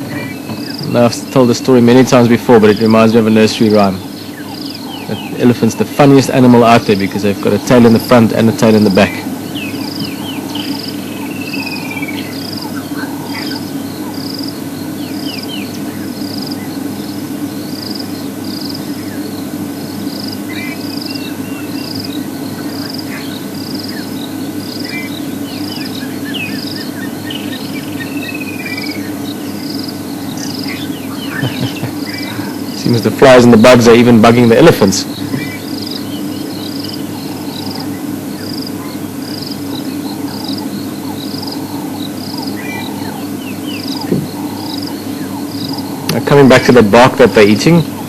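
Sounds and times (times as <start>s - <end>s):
birds calling: 0.0s - 48.0s
insect chirping: 0.0s - 48.0s
steady low drone: 0.0s - 48.0s
whistled bird call: 30.3s - 32.6s.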